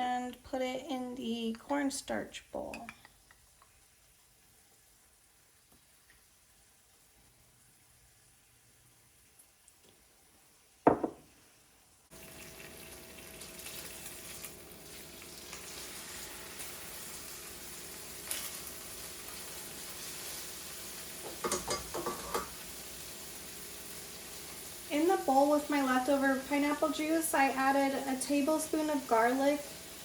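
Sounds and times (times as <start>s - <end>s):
chicken sizzling in frying pan: 9.0s - 30.0s.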